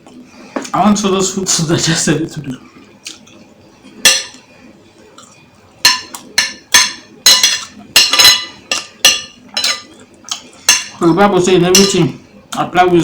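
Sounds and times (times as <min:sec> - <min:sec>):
cutlery clinking against dish: 0:04.0 - 0:04.4, 0:05.8 - 0:11.1, 0:11.7 - 0:12.1.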